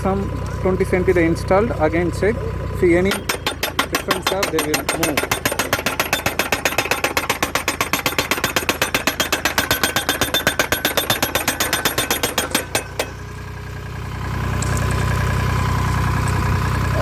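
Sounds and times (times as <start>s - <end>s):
post driver hammering steel post: 2.9s - 13.5s.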